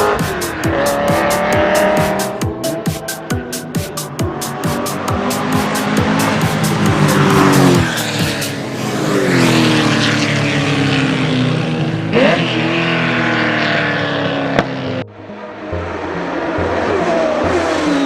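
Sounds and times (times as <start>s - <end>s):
racing car engine revving: 0.0s - 18.0s.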